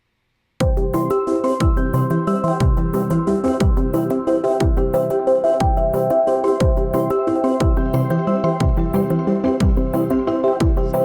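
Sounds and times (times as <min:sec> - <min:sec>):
electronic music with deep beat: 0:00.6 - 0:11.0.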